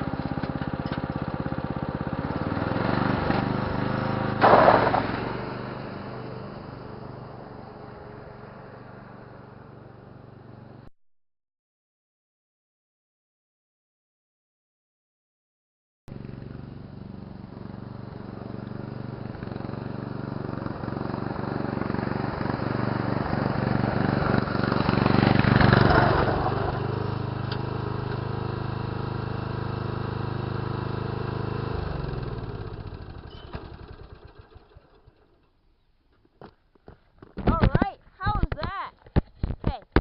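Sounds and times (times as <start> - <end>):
riding lawn mower engine: 0.0 - 10.9, 16.1 - 35.8.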